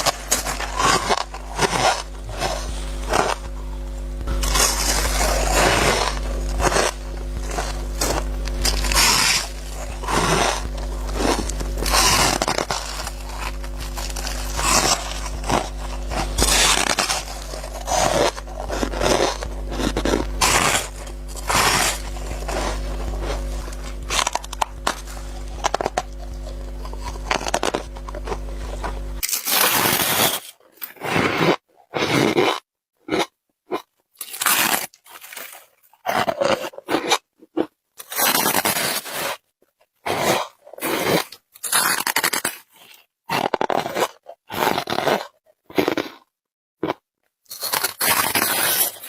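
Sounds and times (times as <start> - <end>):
low hum: 0.0 - 29.4
ice being chewed: 0.0 - 39.4, 40.0 - 49.0.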